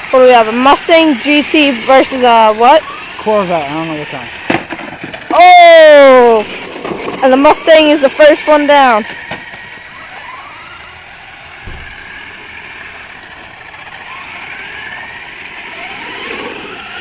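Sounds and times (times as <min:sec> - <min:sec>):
toy car motors whining: 0:00.0 - 0:17.0
dull thump: 0:11.6 - 0:12.1.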